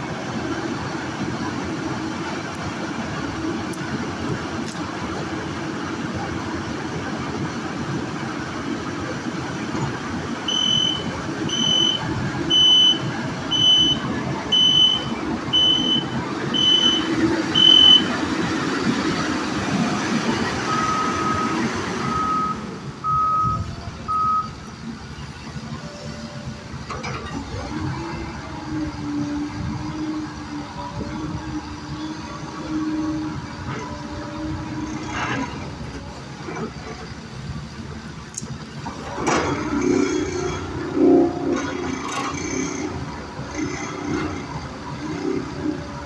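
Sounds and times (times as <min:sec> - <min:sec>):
heavy machinery engine running: 0:00.0 - 0:46.0
high-pitched reversing alarm beeping: 0:10.5 - 0:18.2, 0:20.7 - 0:24.6
low-pitched backup alarm beeping: 0:10.5 - 0:18.2.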